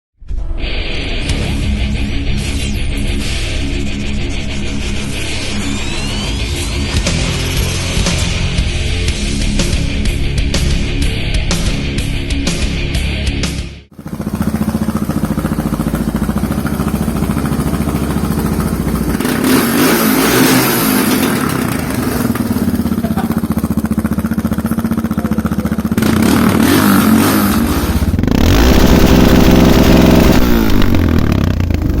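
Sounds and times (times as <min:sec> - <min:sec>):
rock music: 0:00.4 - 0:14.4, 0:15.0 - 0:32.0
motorcycle engine revving: 0:13.9 - 0:32.0.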